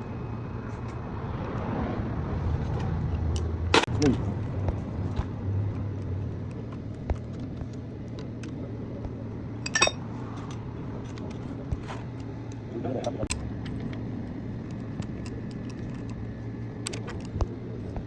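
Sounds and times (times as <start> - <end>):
engine running rumble: 0.0 - 18.0
metallic clinks: 9.6 - 10.1.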